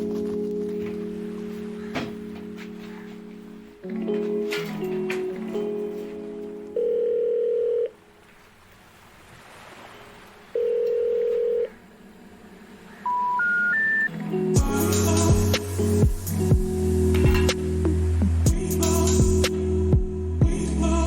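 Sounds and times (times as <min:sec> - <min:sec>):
background music: 0:00.0 - 0:08.2, 0:12.7 - 0:21.0
telephone ringback tone: 0:06.8 - 0:08.0, 0:10.6 - 0:11.8, 0:13.0 - 0:14.1
rising special information tone beeps: 0:13.1 - 0:14.1.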